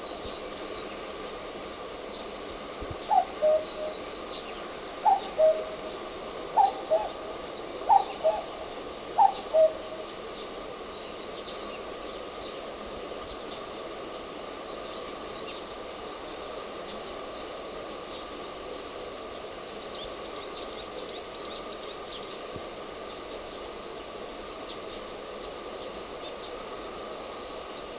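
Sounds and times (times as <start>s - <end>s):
cuckoo calling: 3.1s - 4.4s, 5.0s - 10.1s.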